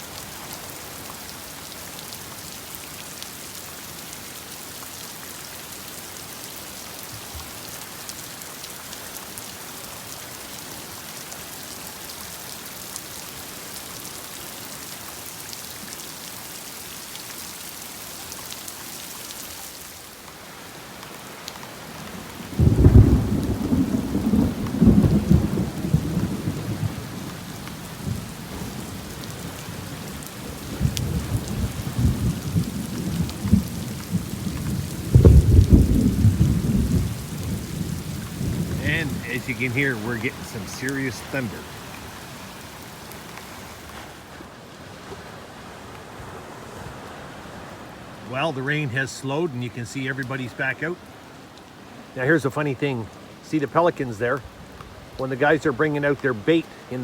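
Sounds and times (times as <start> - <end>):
heavy rain hissing: 0.0 - 44.9, 45.7 - 57.0
thunder rumbling: 22.5 - 42.4.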